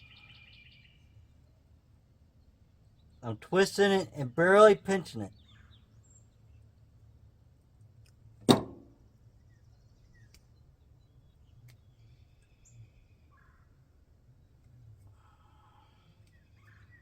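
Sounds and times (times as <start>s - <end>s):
faint small ticks: 16.1s - 16.8s.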